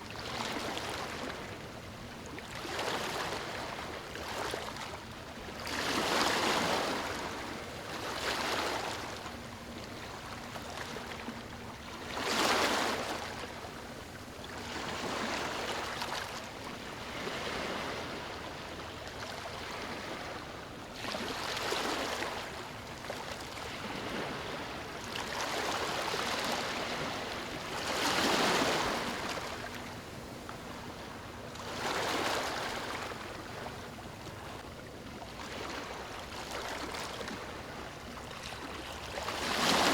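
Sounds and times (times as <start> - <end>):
ocean waves breaking: 5.6 - 9.2, 14.7 - 34.6, 35.4 - 39.9.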